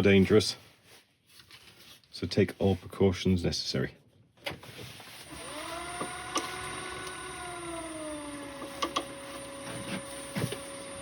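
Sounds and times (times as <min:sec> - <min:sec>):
lathe motor humming: 0:05.2 - 0:11.0.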